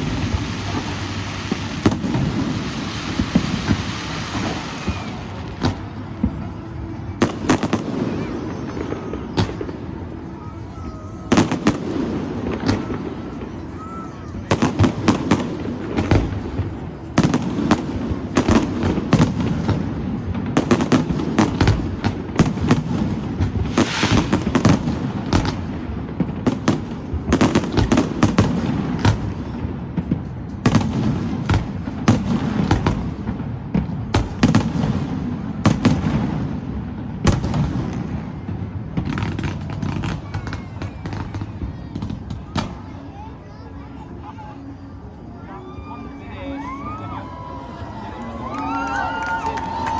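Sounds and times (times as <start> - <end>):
low rumble of reports: 0.0 - 23.7
firework bangs and crackles: 0.0 - 43.4, 46.8 - 49.9.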